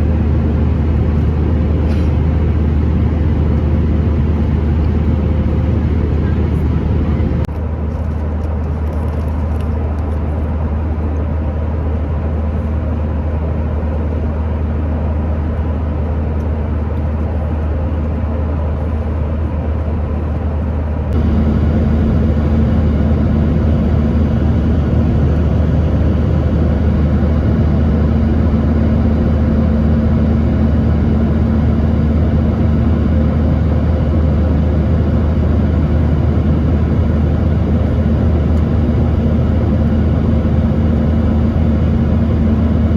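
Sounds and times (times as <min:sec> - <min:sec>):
steady hum: 0:00.0 - 0:07.5, 0:20.6 - 0:42.9
jet cabin drone: 0:00.0 - 0:42.9.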